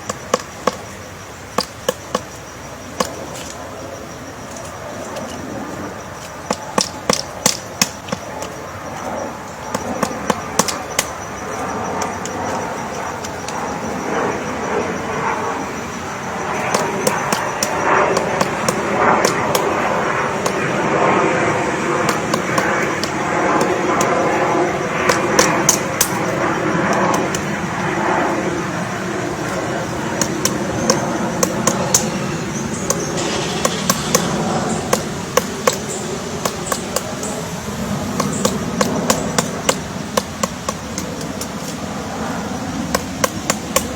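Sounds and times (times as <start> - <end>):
bird tapping on wood: 0.0 - 3.6, 6.2 - 13.7, 16.5 - 20.7, 22.0 - 24.2, 25.0 - 27.5, 30.2 - 32.2, 32.8 - 37.3, 38.0 - 41.8, 42.9 - 43.9
woodpecker pecking at wood: 0.0 - 3.8, 4.4 - 14.0, 15.8 - 20.9, 21.6 - 28.4, 29.4 - 43.9
traffic rumble: 0.0 - 43.9.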